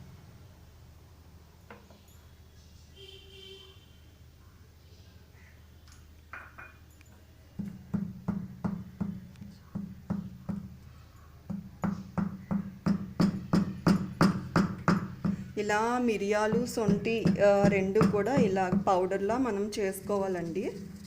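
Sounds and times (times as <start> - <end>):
pestle pounding in mortar: 7.6 - 10.8, 11.5 - 20.1.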